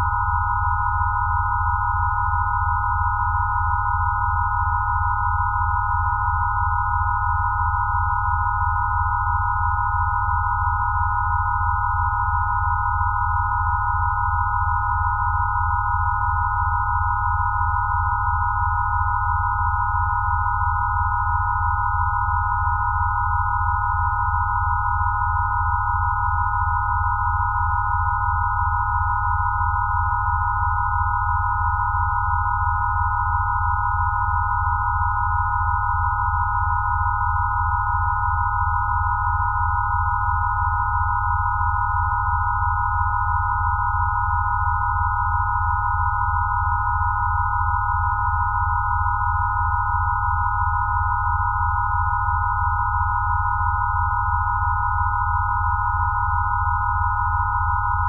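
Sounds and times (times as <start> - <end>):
steady pure sine tones: 0.0 - 58.0.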